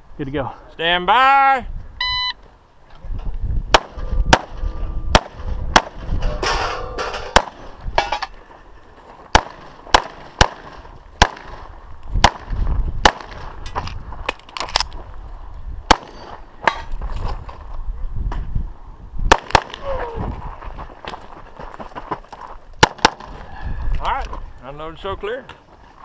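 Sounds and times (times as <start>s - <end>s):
pistol gunshots: 3.7s - 6.1s, 7.3s - 7.7s, 9.3s - 11.6s, 12.2s - 13.6s, 15.9s - 16.8s, 19.3s - 19.8s, 22.8s - 23.4s.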